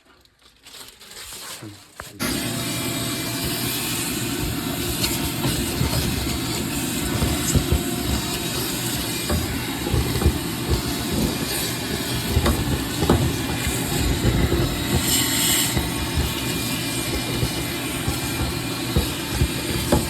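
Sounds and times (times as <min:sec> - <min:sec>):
furnace low rumble: 0:02.2 - 0:20.0
irregular knocks: 0:04.2 - 0:20.0.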